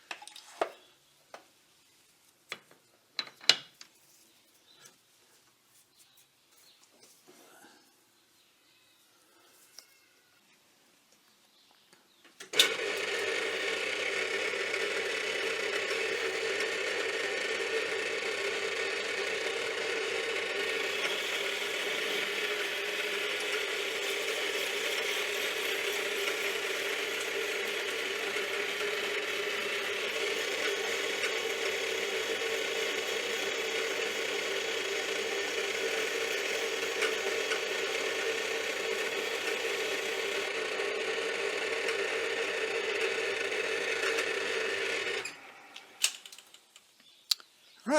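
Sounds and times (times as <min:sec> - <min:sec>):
metal lathe geared whine: 0:12.6 - 0:45.5.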